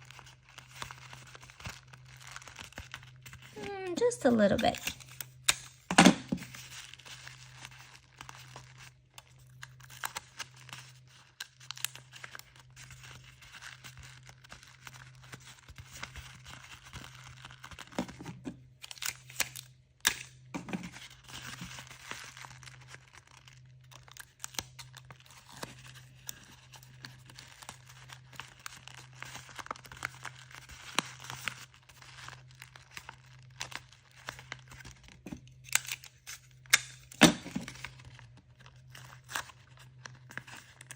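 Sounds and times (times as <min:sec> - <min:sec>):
paper rustling and crinkling: 0:00.0 - 0:19.4, 0:20.6 - 0:40.9.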